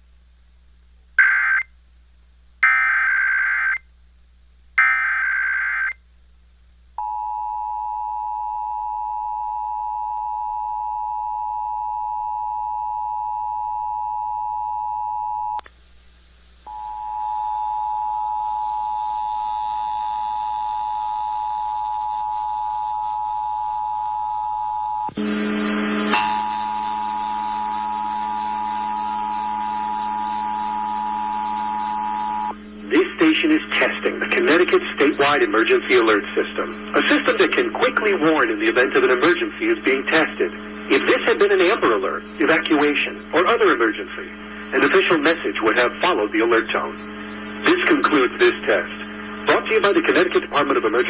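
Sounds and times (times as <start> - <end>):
screechy digital header tones: 1.2 - 1.7, 2.6 - 3.8, 4.8 - 6.0, 25.2 - 51.0
two-tone attention signal: 25.0 - 32.6.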